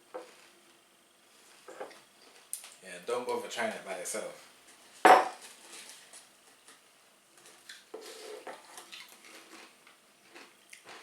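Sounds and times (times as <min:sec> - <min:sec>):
people eating crisps: 0:08.7 - 0:11.0.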